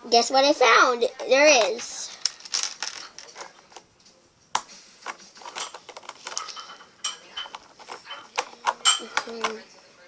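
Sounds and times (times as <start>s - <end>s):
plastic bricks clicking: 2.2s - 3.8s, 4.6s - 6.6s.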